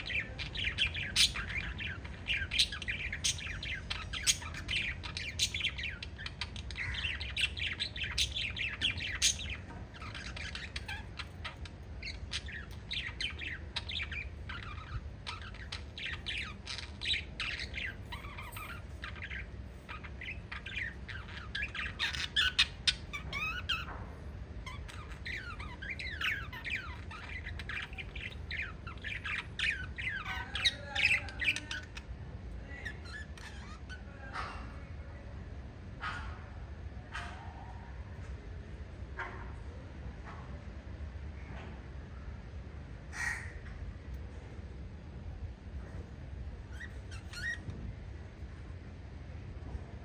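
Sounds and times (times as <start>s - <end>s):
parrots chirping and squawking: 0.0s - 34.9s, 35.9s - 38.0s, 43.0s - 44.4s, 46.4s - 47.8s
steady low hum: 0.0s - 50.0s.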